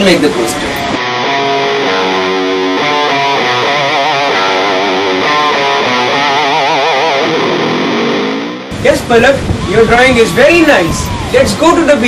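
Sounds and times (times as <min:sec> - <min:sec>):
guitar background music: 0:00.5 - 0:08.8.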